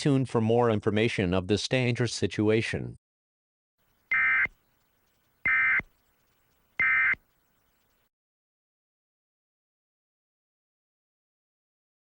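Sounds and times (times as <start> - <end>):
two-tone digital data bursts: 4.1 - 4.6, 5.4 - 5.9, 6.8 - 7.2.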